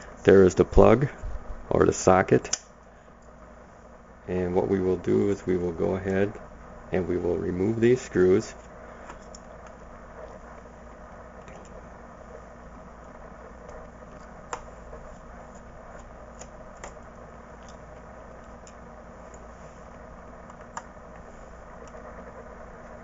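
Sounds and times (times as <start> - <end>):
sharp click: 2.4 - 2.7.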